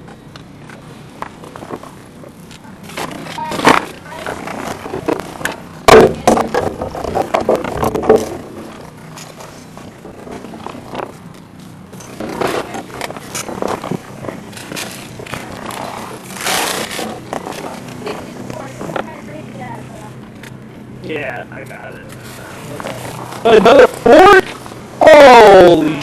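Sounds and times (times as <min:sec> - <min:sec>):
trash scraping and rustling: 0:11.9 - 0:19.1.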